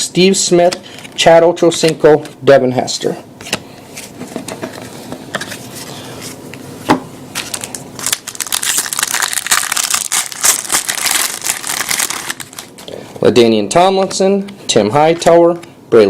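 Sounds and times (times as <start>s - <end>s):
wrapper crinkling: 7.3s - 12.8s.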